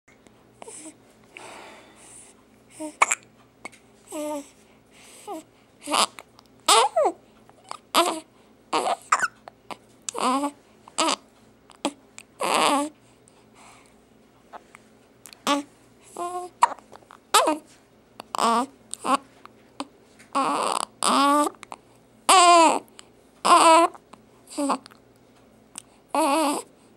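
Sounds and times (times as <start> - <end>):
person hiccuping: 2.9 - 3.3, 8.8 - 9.5.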